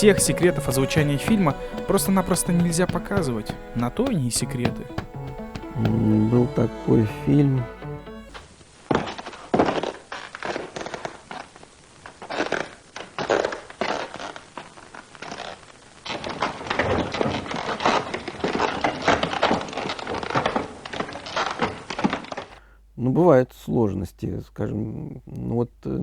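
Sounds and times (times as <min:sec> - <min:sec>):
knocks taps and clatters: 0:00.0 - 0:06.3.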